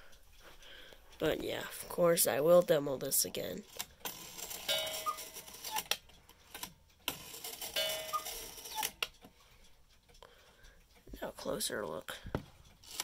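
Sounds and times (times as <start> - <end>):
clock mechanism clicks: 1.1 - 13.0
cuckoo clock call: 4.1 - 6.0, 7.0 - 9.1.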